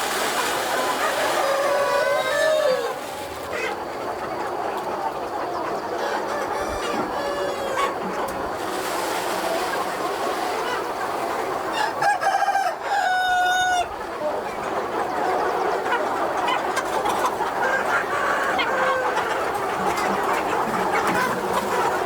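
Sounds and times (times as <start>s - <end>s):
chickens clucking: 0.0s - 22.0s
rooster crowing: 1.0s - 3.0s, 6.0s - 8.0s, 11.7s - 13.9s.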